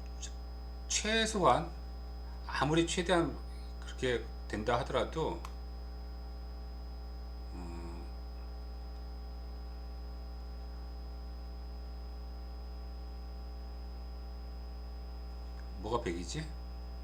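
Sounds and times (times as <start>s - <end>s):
electrical mains hum: 0.0s - 17.0s
faint high whine: 0.0s - 17.0s
faint pitched murmur: 7.4s - 8.8s.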